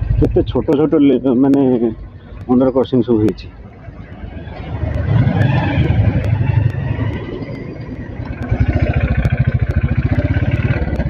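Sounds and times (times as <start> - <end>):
motorcycle engine running: 0.0 - 1.2, 3.5 - 11.0.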